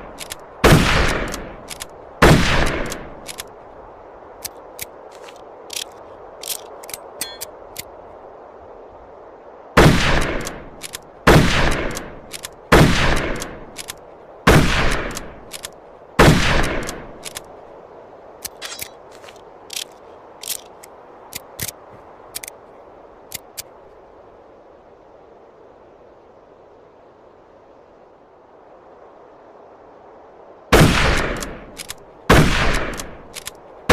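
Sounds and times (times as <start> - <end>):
rifle shots echoing: 0.6 - 1.5, 2.2 - 3.0, 9.8 - 10.6, 11.3 - 12.1, 12.7 - 13.6, 14.5 - 15.3, 16.2 - 17.0, 30.7 - 31.6, 32.3 - 33.1
rifle bolt clicks: 1.1 - 1.9, 4.4 - 7.9, 18.4 - 22.6, 31.2 - 32.0, 32.8 - 33.6.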